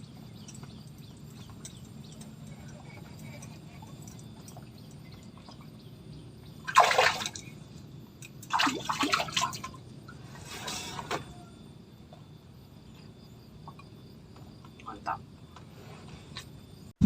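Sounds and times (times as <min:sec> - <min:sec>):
water splashing: 0:06.7 - 0:07.5, 0:08.5 - 0:09.7.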